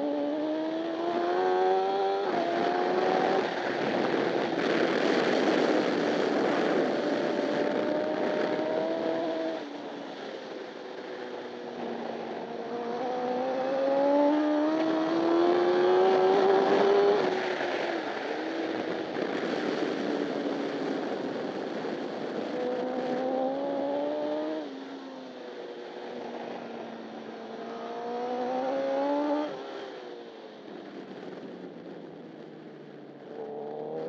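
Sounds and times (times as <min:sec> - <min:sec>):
motorcycle engine revving: 0:00.0 - 0:10.8, 0:11.7 - 0:25.1, 0:27.2 - 0:30.0, 0:33.3 - 0:34.0
wind rush: 0:00.3 - 0:11.0, 0:11.7 - 0:24.6.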